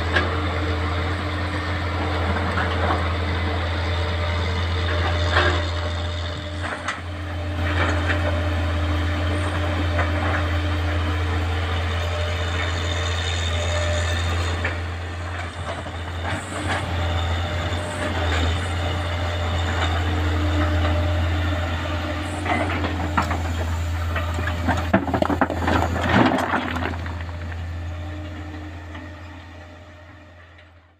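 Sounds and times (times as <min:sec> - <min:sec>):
excavator diesel engine droning: 0:00.0 - 0:30.9
rocks knocking and clattering: 0:24.3 - 0:27.6.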